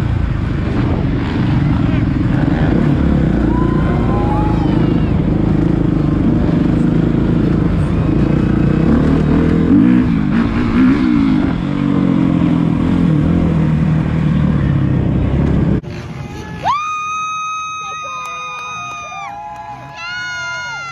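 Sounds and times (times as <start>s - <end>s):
dirt bike engines revving: 1.8s - 11.8s.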